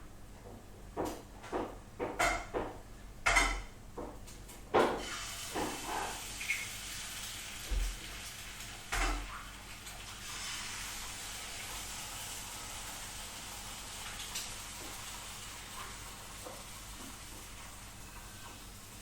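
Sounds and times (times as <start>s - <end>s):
kitchenware knocking and clinking: 1.0s - 5.0s.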